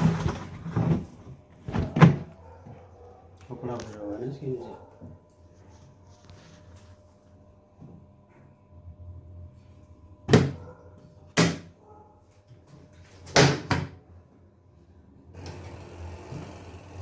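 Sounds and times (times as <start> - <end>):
knocks on washing machine: 10.3 - 10.6, 13.4 - 14.0.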